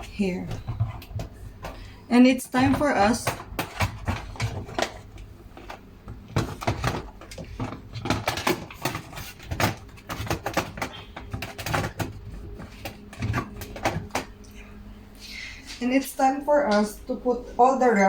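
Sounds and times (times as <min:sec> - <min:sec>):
dishwasher parts clicking and knocking: 0:00.0 - 0:14.4.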